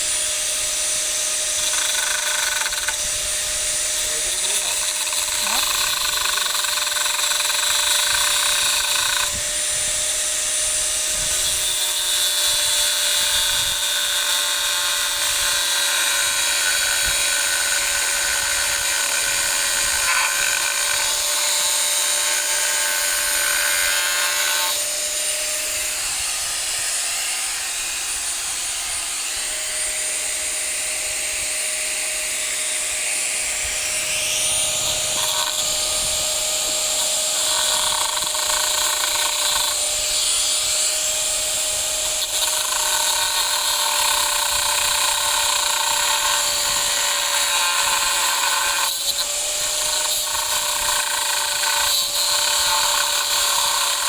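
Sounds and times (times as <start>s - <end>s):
power tool hissing whine: 0.0s - 54.0s.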